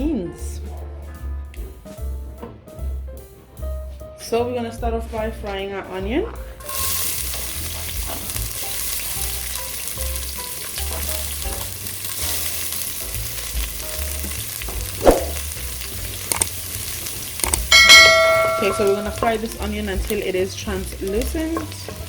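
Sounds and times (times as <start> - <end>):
onion sizzling in oil: 6.6 - 22.0
pan clatter: 17.4 - 19.5.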